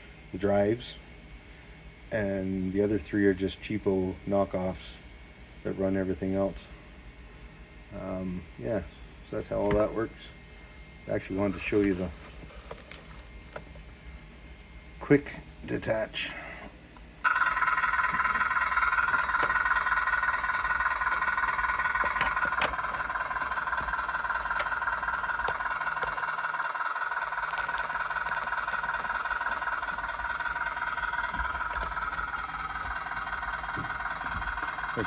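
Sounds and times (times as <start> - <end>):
diesel engine through small speaker: 11.1 - 12.3, 15.0 - 35.0.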